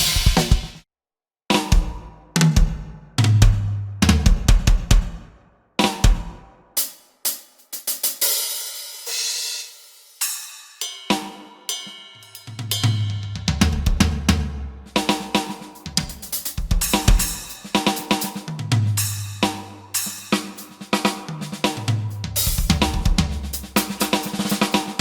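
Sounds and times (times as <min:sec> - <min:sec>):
electronic drum kit groove: 0:00.0 - 0:00.8, 0:01.6 - 0:10.4, 0:12.4 - 0:25.0.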